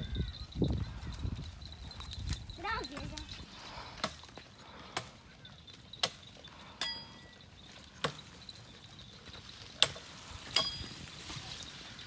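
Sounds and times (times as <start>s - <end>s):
metallic chink: 5.5s - 9.2s, 9.8s - 11.1s.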